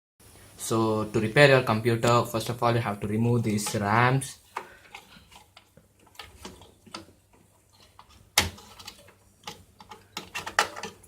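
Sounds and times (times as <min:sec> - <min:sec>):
plastic clicks and knocks: 0:05.6 - 0:11.0.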